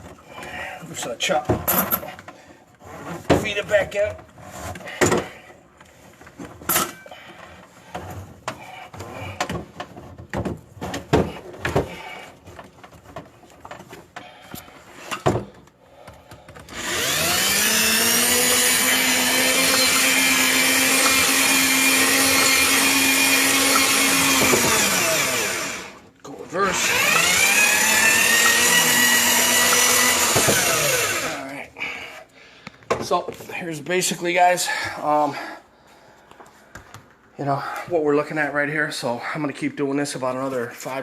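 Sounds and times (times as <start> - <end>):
drain-cleaning machine motor humming: 16.8 - 26.0, 26.6 - 31.4
cable clicks and knocks: 27.4 - 31.3.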